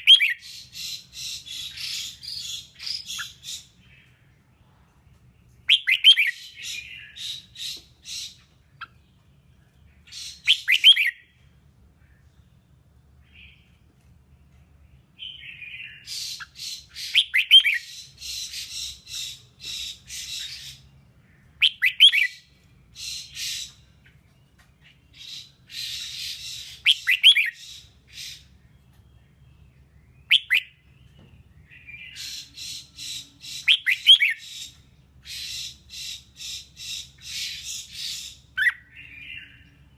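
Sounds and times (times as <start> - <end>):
bird song with chattering notes: 0.0 - 39.9.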